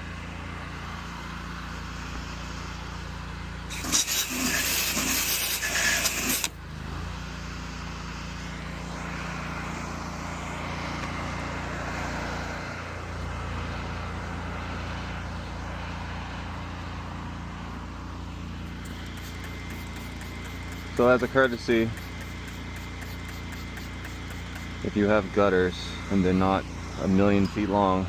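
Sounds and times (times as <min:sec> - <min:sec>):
pressure washer engine running: 0:00.0 - 0:28.0
hiss of water spray: 0:03.7 - 0:06.5.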